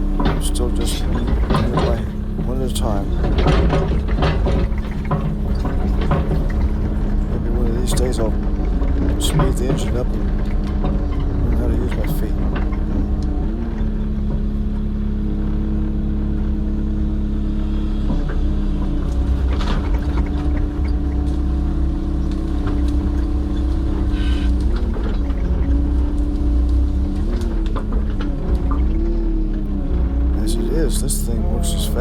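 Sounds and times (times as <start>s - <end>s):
excavator engine idling: 0.0s - 32.0s.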